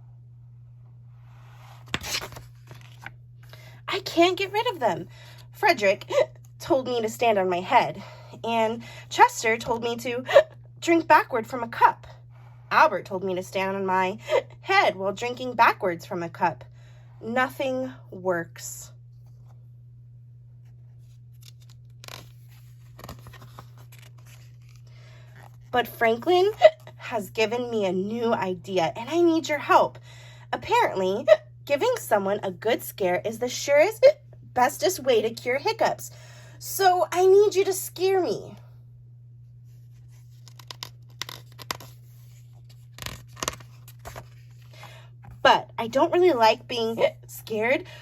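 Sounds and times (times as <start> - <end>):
steady low hum: 0.0 - 48.0
paper pages rustling: 1.4 - 3.1, 20.6 - 25.6, 39.8 - 45.4.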